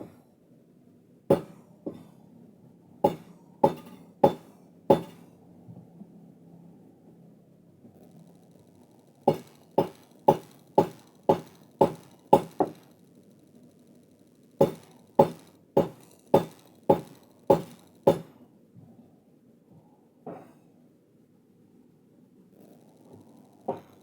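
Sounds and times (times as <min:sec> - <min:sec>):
forging hammer striking steel: 0:01.3 - 0:01.6, 0:03.1 - 0:05.2, 0:09.3 - 0:12.9, 0:14.6 - 0:18.4.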